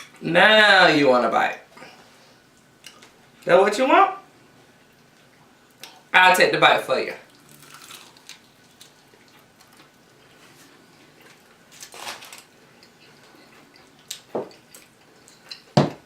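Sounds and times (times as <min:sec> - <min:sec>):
person chewing chicken wings: 0:07.3 - 0:15.8.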